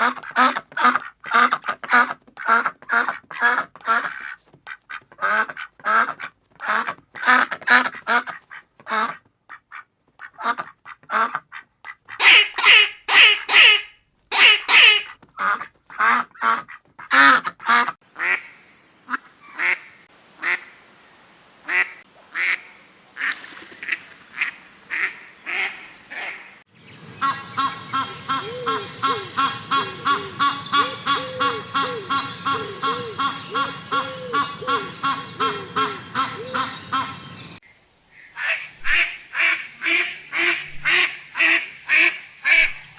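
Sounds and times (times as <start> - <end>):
ducks quacking: 0.0 - 20.9, 21.6 - 37.6
background hiss: 18.0 - 41.1.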